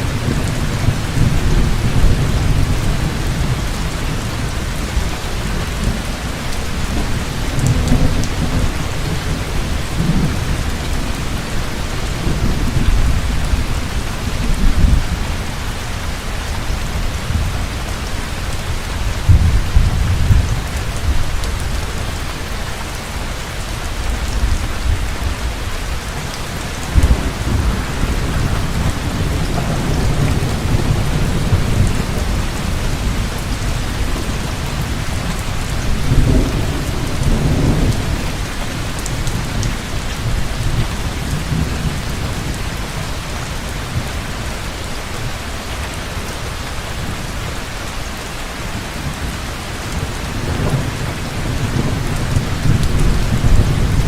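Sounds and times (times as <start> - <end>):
heavy rain pouring: 0.0 - 54.0
rolling thunder: 18.6 - 22.0, 24.0 - 42.6, 49.9 - 54.0.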